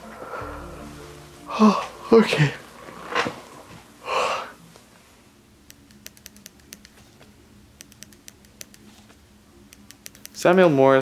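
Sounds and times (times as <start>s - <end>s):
breath-like rush of noise: 0.0s - 4.6s
computer keyboard typing: 5.9s - 7.0s, 9.8s - 10.4s.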